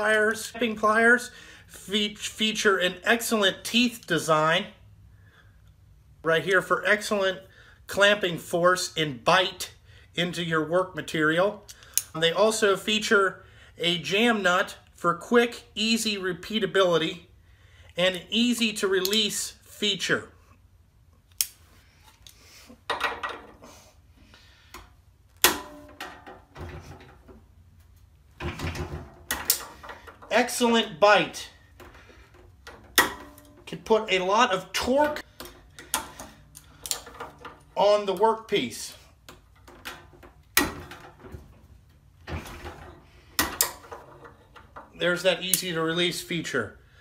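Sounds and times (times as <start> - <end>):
locking pliers clicking metallically: 35.4 - 37.2.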